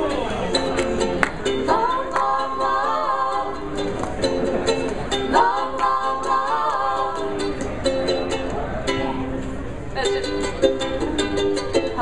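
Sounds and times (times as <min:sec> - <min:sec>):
ukulele strumming: 0:00.0 - 0:12.0
wordless vocal melody: 0:01.5 - 0:08.0.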